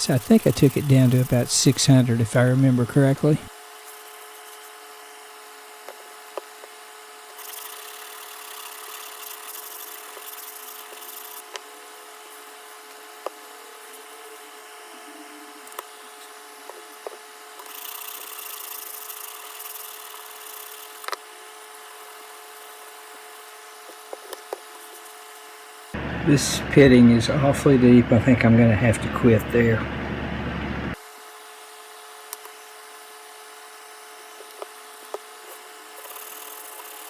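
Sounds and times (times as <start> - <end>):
sandpaper rubbing on steel: 0.0 - 3.4, 7.4 - 11.4
steady background hum: 0.0 - 31.0.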